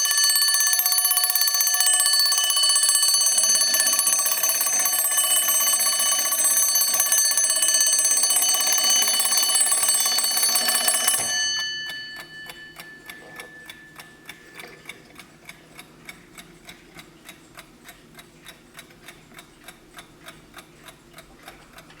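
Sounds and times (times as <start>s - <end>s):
alarm clock bell ringing: 0.0s - 14.5s
clock ticking: 0.0s - 22.0s.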